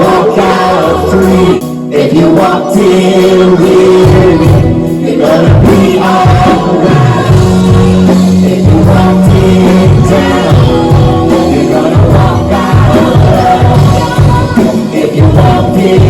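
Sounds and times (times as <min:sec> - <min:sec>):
gospel-style song with singing: 0:00.0 - 0:16.0
steady bass line: 0:00.0 - 0:16.0.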